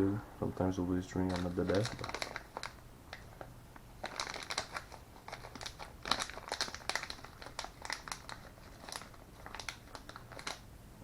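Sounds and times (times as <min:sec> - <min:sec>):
plastic packaging crinkling: 0:01.0 - 0:10.7.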